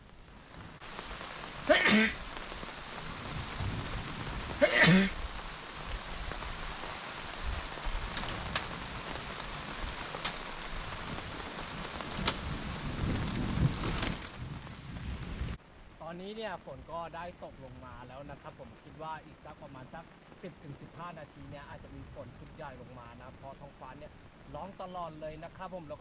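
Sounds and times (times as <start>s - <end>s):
steady rain falling: 0.0s - 26.0s
person coughing: 1.7s - 2.2s, 4.6s - 5.2s.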